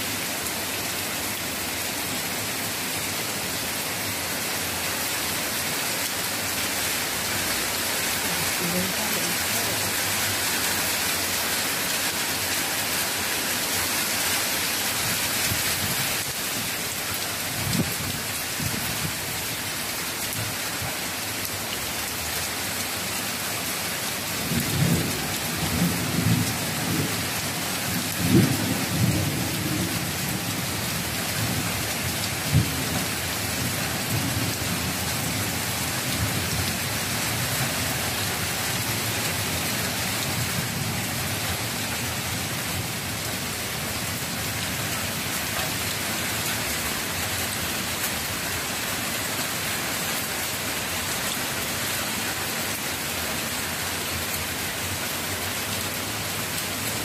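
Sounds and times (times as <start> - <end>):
heavy rain pouring: 0.0 - 57.0
thunder rumbling: 28.1 - 29.9.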